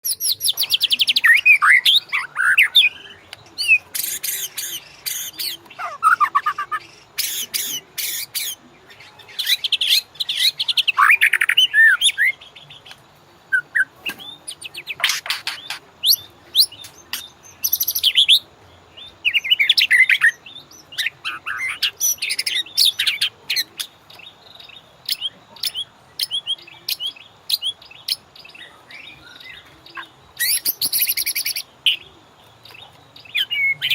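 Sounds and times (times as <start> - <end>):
bird singing whistled phrases: 28.9 - 32.1.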